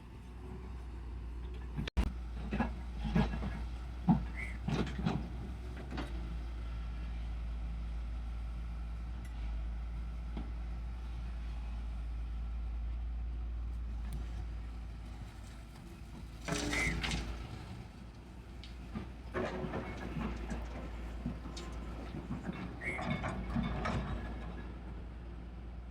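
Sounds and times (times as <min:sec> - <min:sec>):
diesel engine rumbling: 0:00.0 - 0:25.9
metallic knocks and clatters: 0:18.9 - 0:24.9.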